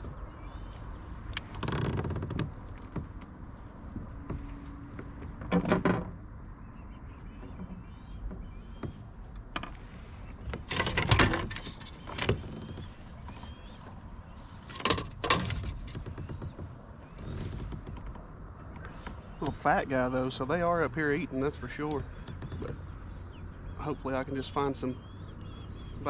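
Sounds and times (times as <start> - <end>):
fish knocking and rattling in kayak: 1.4 - 19.6, 21.7 - 23.5.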